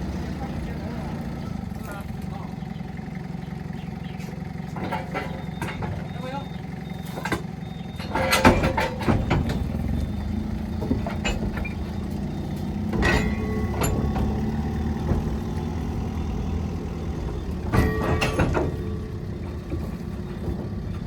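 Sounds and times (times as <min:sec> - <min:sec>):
diesel locomotive engine running: 0:00.0 - 0:21.0
sharp metallic clanks: 0:04.6 - 0:21.0.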